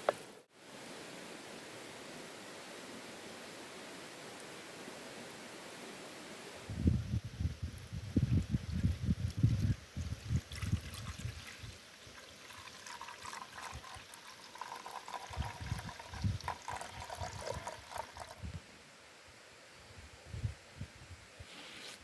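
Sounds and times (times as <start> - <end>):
water trickling: 9.3 - 18.5.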